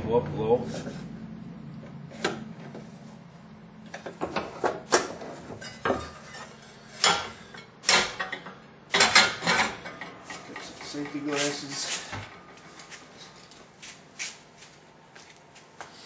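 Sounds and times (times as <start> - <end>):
drill press metal clanks: 7.0 - 10.7.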